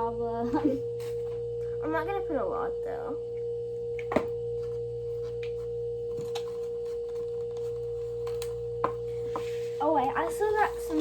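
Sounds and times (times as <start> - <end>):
mid-pitched hum: 0.0 - 11.0.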